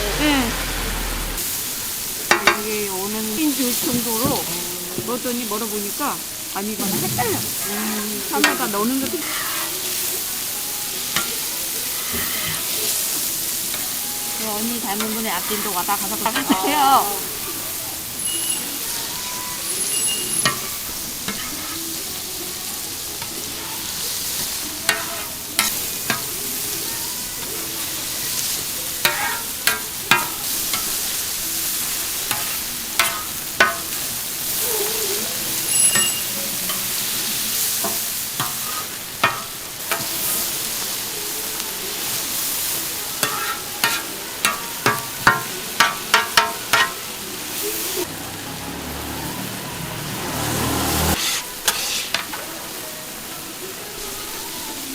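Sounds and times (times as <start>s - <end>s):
food sizzling on a griddle: 0.0s - 54.9s
metal spatula scraping a hot plate: 6.8s - 22.1s, 23.2s - 31.2s, 32.2s - 34.7s, 35.3s - 40.9s, 42.0s - 47.1s, 50.6s - 52.5s.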